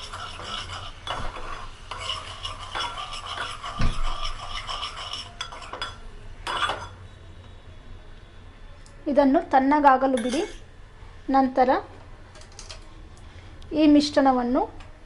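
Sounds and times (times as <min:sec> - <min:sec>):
syrup boiling: 0:00.0 - 0:06.9
spoon stirring and scraping in pan: 0:00.0 - 0:07.0
spoon clinking against pan: 0:10.2 - 0:10.6.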